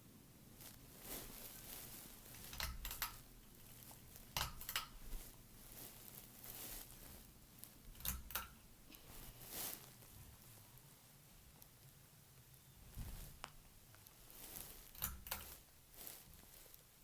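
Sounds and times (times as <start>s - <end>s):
ceiling fan humming: 0.0s - 17.0s
short rustling clicks: 0.6s - 10.0s, 13.1s - 16.9s.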